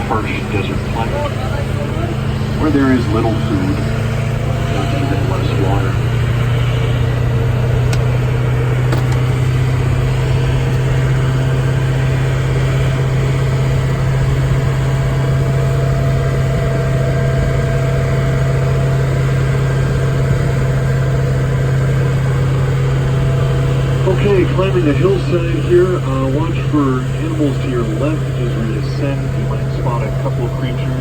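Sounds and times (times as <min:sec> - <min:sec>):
engine humming: 0:00.0 - 0:31.0.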